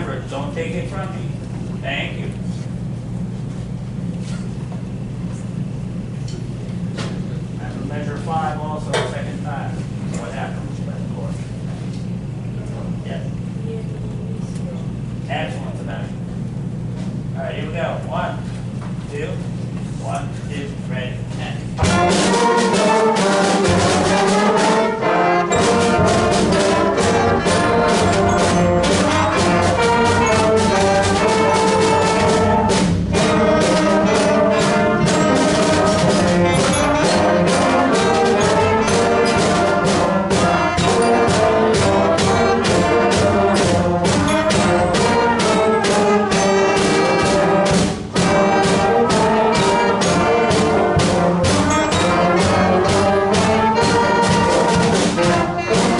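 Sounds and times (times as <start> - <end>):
concert band playing: 21.8 - 55.9.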